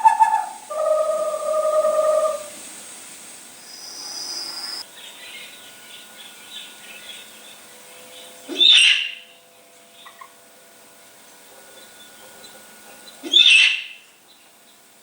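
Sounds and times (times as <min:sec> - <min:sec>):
owl rasping calls: 0:00.0 - 0:02.6, 0:06.2 - 0:09.3, 0:12.4 - 0:14.0
owl screech: 0:00.0 - 0:02.6, 0:08.5 - 0:09.2, 0:13.2 - 0:14.0.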